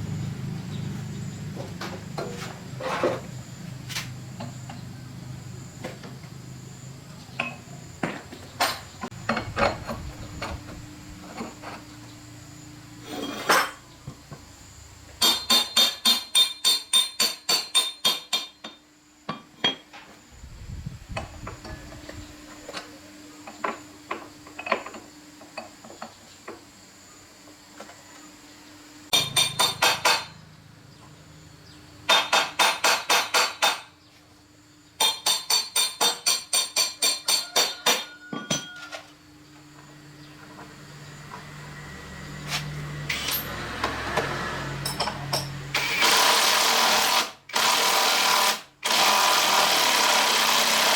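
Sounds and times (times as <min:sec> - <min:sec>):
hammer striking metal: 0:29.1 - 0:30.4.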